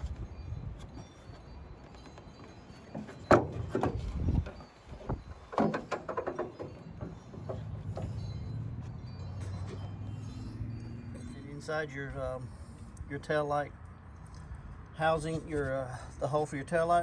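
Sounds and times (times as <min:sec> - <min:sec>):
hand tools clicking and knocking: 0:01.9 - 0:08.4.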